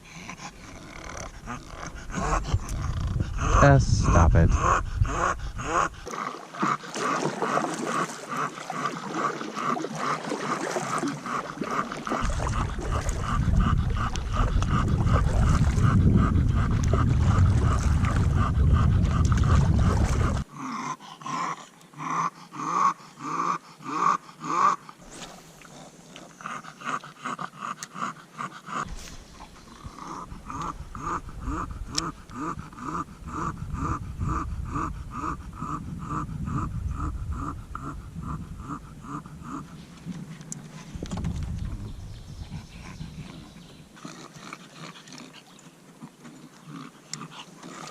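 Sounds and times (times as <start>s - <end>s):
dog panting heavily: 0.0s - 24.8s, 26.4s - 39.9s, 42.0s - 45.5s
low rumble: 0.5s - 6.0s, 12.4s - 20.5s, 28.9s - 43.3s.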